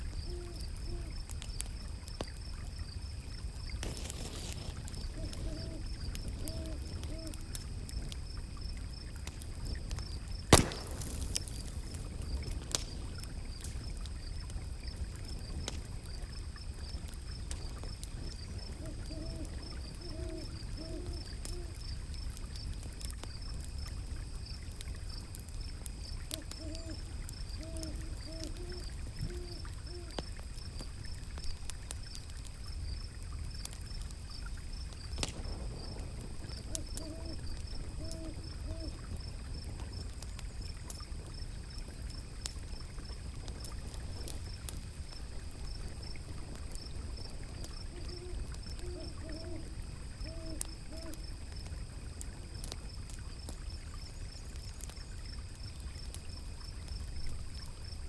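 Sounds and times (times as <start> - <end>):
fire crackling and popping: 0.0 - 58.0
low hooting calls: 4.1 - 7.6, 18.6 - 21.8, 26.4 - 30.2, 36.6 - 39.2, 47.8 - 51.2.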